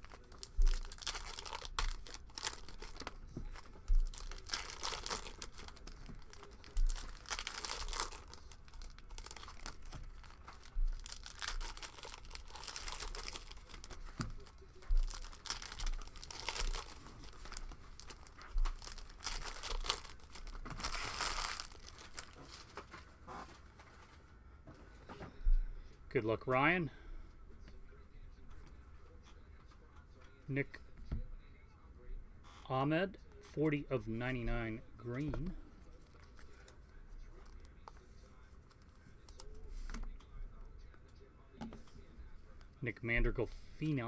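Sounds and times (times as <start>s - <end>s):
card packs being torn open: 0.0s - 22.9s
wrappers crinkling: 0.0s - 24.0s.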